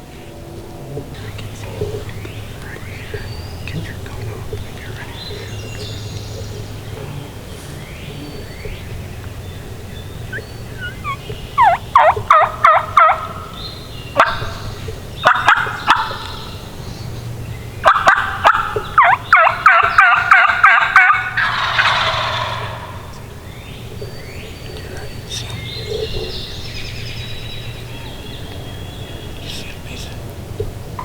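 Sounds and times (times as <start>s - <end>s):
turkeys gobbling: 8.6s - 16.8s, 17.8s - 23.5s.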